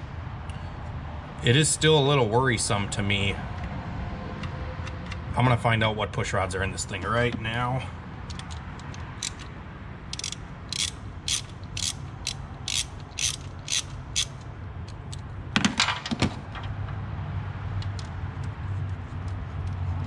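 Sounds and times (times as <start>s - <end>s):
ratchet wrench clicking: 8.3s - 9.5s, 10.1s - 15.2s.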